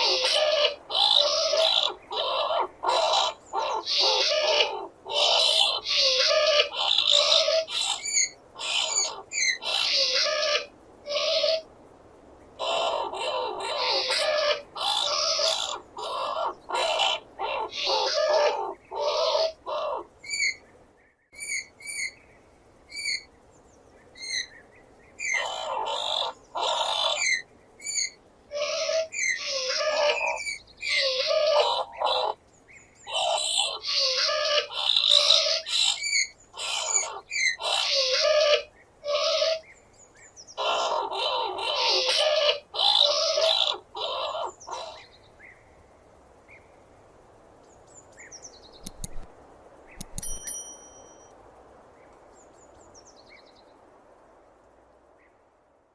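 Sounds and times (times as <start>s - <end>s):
skunk chirps: 0.0s - 11.6s, 33.1s - 39.6s, 48.7s - 49.3s
skunk squealing: 0.0s - 11.6s, 12.6s - 20.6s, 25.2s - 32.4s, 33.1s - 39.6s, 40.6s - 45.0s.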